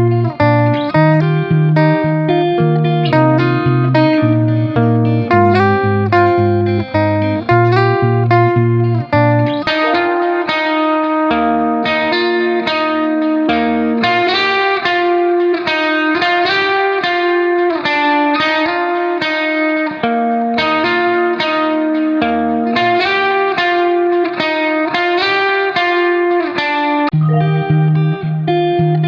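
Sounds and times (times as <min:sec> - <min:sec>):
plucked guitar melody: 0:00.0 - 0:29.0.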